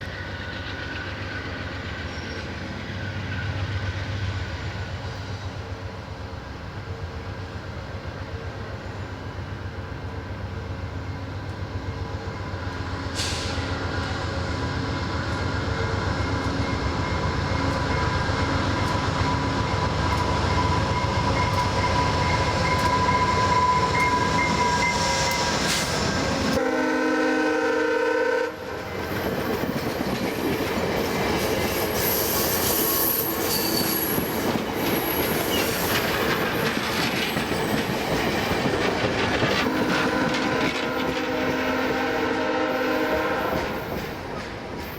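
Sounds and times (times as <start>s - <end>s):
diesel train engine and wheels: 0.0s - 44.9s
high-pitched squeal: 19.1s - 26.6s, 31.6s - 36.2s
multi-note train horn: 26.4s - 28.9s, 39.6s - 44.0s.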